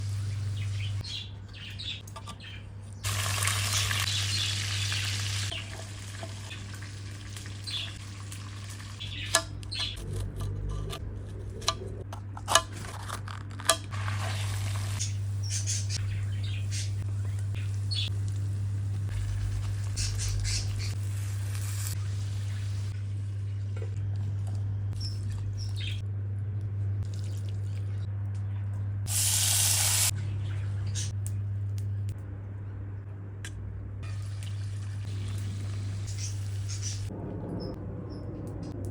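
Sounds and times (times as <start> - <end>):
birds chirping: 0.1 - 3.1, 3.8 - 8.0, 8.8 - 10.0, 15.0 - 18.2, 25.0 - 26.0, 35.8 - 38.3
steady low hum: 9.1 - 14.2, 14.8 - 29.2.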